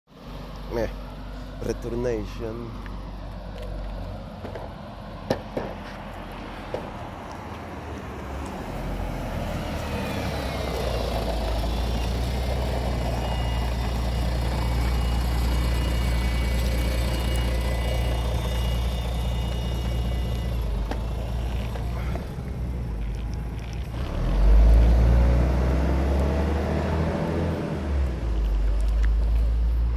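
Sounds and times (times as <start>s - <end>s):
skateboard wheels rumbling: 2.8s - 25.0s
electric motor whine: 9.0s - 27.6s.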